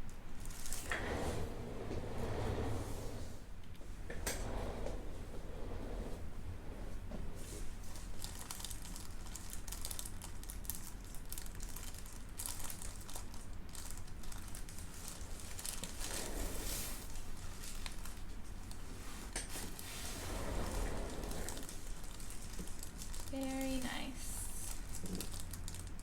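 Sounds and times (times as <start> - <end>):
steady low hum: 0.0 - 8.4
crinkling and rustling: 0.4 - 26.0.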